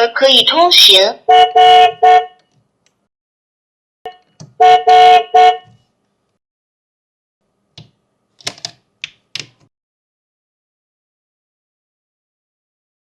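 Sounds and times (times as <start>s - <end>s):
toy car horn beeping: 1.3s - 2.5s, 4.1s - 5.8s.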